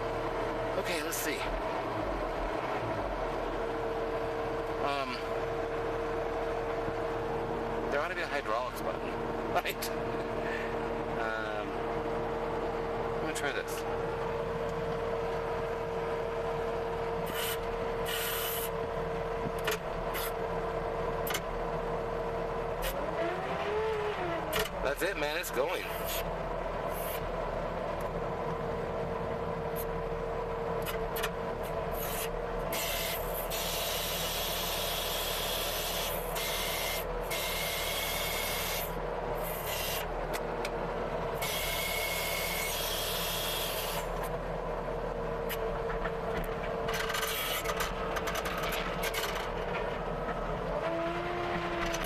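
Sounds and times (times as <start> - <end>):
engine drone: 0.0 - 52.0
gritty scraping churn of tiller: 17.1 - 18.8, 30.8 - 52.0.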